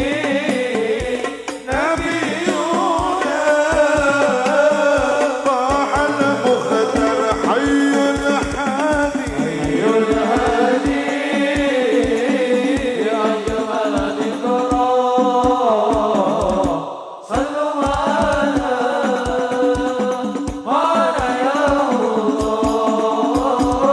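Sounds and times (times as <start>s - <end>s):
devotional song singing: 0.0s - 23.9s
steady drumbeat: 0.0s - 23.9s.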